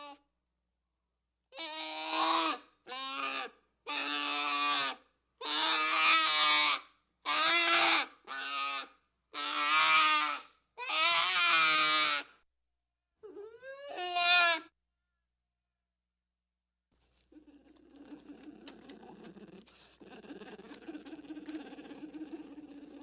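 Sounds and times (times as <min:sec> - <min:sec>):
creature cries: 0:01.6 - 0:12.4, 0:13.2 - 0:14.7.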